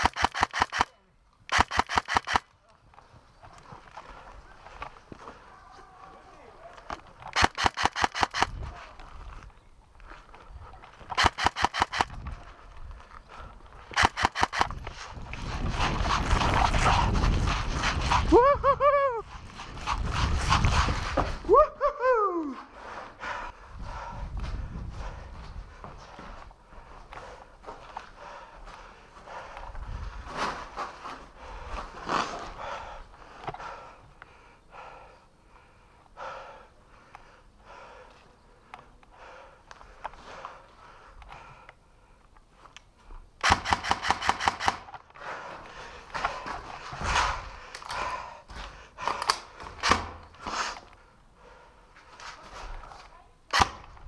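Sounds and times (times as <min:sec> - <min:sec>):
airsoft gun bursts: 0:00.0 - 0:02.5, 0:07.3 - 0:08.6, 0:11.1 - 0:12.2, 0:13.9 - 0:14.8, 0:43.4 - 0:45.0
person breathing heavily: 0:22.4 - 0:30.4, 0:31.0 - 0:42.3, 0:45.0 - 0:52.4.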